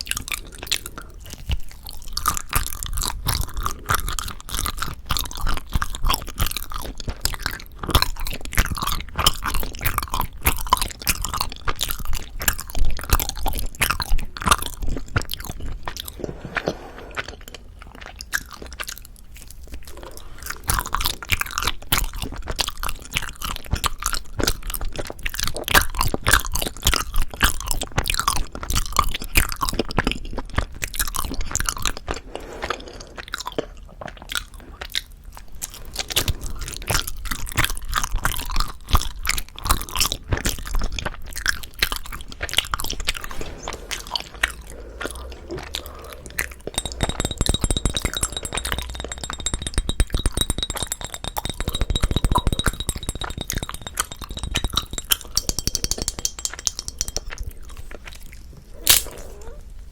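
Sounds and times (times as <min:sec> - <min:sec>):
wet chewing of sticky rice cake: 0:00.0 - 0:47.5
clicking mouth sounds: 0:43.9 - 0:57.8.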